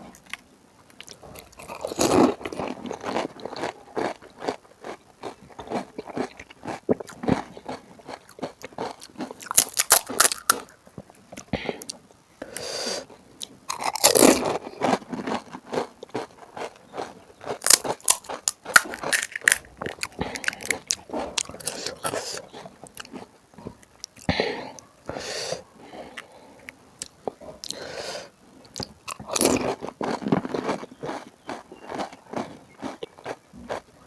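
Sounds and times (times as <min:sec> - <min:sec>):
crunching and chewing: 0:00.1 - 0:25.2, 0:25.8 - 0:28.0, 0:28.6 - 0:34.0.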